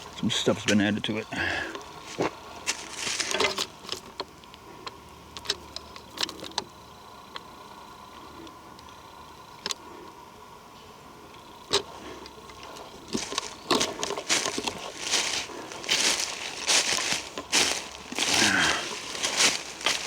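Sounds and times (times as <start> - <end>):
twigs crunching underfoot: 1.8 - 4.6, 12.5 - 20.0.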